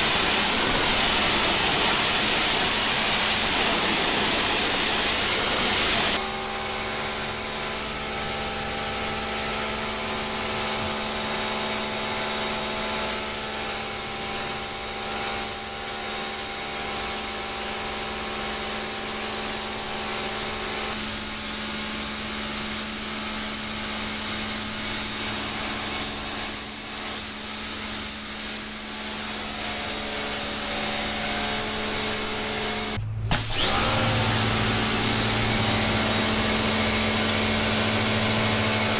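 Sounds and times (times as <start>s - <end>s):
pressure washer motor hum: 0.0s - 11.5s, 29.1s - 38.9s
high-pressure water jet hiss: 0.0s - 38.9s.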